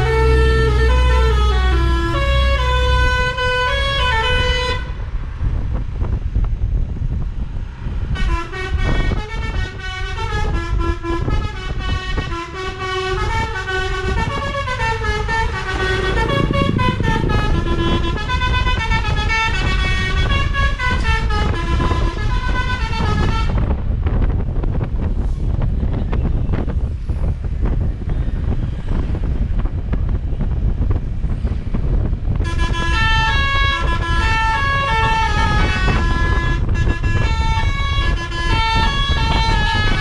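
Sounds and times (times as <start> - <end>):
multi-tone bus horn playing tune: 0.0 - 5.1, 8.1 - 23.8, 32.3 - 40.0
steady low rumble: 0.0 - 40.0.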